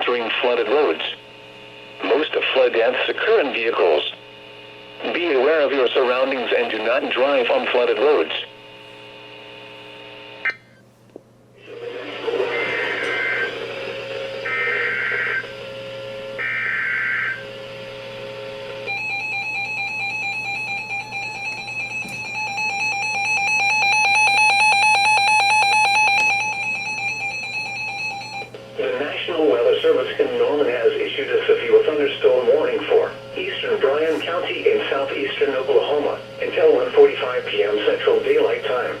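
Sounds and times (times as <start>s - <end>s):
steady attention tone: 12.0s - 39.0s
buzzing digital data tones: 14.2s - 17.7s, 18.8s - 28.5s.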